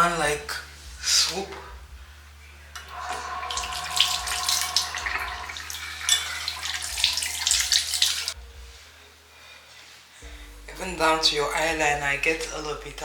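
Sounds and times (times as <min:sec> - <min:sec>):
tap water splashing into sink: 0:02.8 - 0:08.4.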